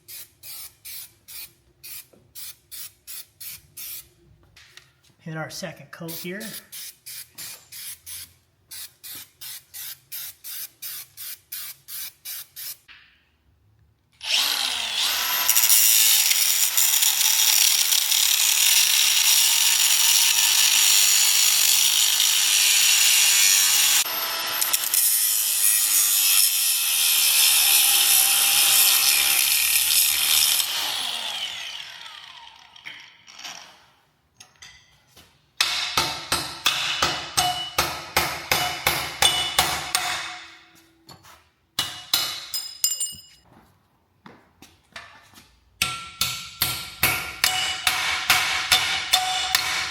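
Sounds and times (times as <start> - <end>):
power tool running: 14.2 - 25.0, 27.8 - 32.8.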